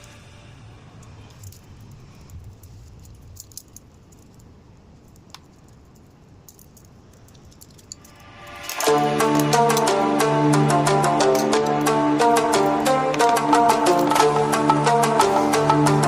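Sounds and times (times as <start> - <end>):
faint scattered clicks: 1.0 - 10.0
light rattles: 1.0 - 10.0.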